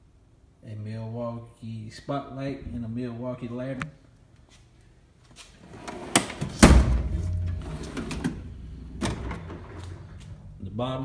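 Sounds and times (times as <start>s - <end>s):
metal drawer sliding on runners: 5.6s - 10.4s
drawer click: 5.8s - 10.4s
loud clunk: 6.2s - 10.7s.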